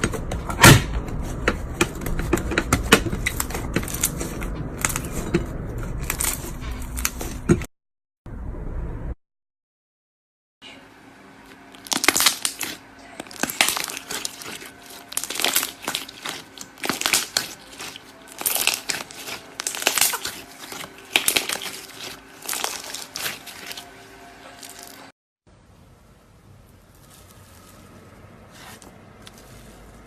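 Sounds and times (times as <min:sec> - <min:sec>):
slime crackling and popping: 0:11.8 - 0:23.9.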